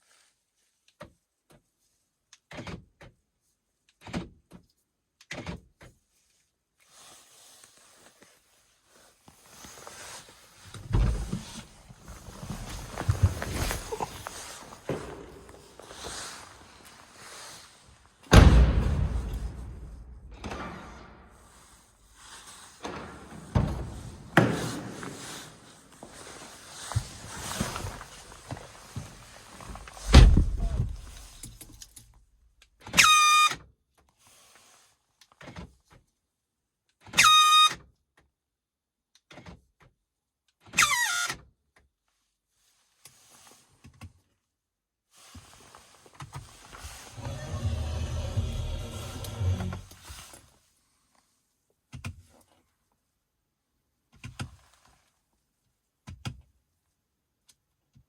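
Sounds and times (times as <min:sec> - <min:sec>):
car doors thudding shut: 0:18.3 - 0:21.0, 0:30.0 - 0:31.4.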